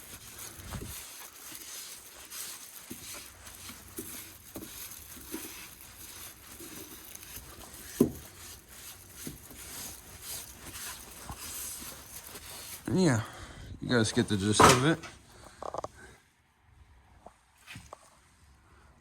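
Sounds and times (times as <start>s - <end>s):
pad scrubbing plastic: 0.0s - 13.2s.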